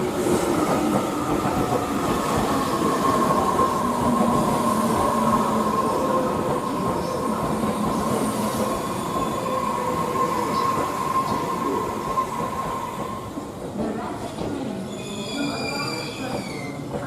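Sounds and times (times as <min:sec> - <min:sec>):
train wheels rumbling on rails: 0:00.0 - 0:14.9
high wheel squeal: 0:14.9 - 0:16.8.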